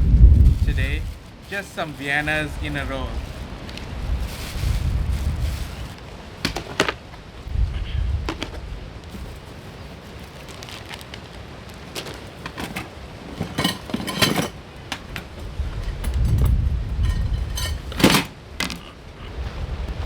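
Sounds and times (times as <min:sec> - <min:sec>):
wind buffeting microphone: 0:00.0 - 0:06.4, 0:07.1 - 0:09.4, 0:15.0 - 0:20.0
kitchen things clinking and rattling: 0:12.0 - 0:18.9.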